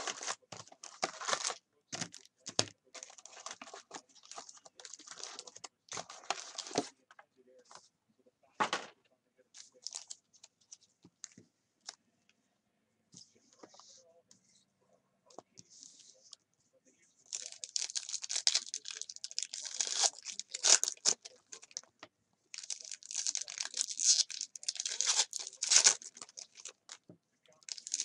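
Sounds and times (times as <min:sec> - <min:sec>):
plastic wrapping crinkling: 0:00.0 - 0:06.9, 0:17.3 - 0:21.9, 0:22.5 - 0:27.0, 0:27.6 - 0:28.0.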